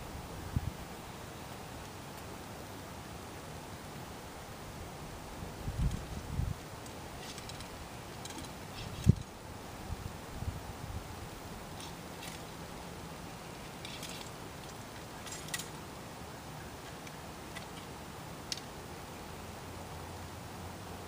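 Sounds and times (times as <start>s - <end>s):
low background noise: 0.0s - 21.0s
musket clicks and rattle: 6.8s - 9.3s, 11.7s - 12.5s, 13.6s - 15.8s, 16.8s - 18.7s.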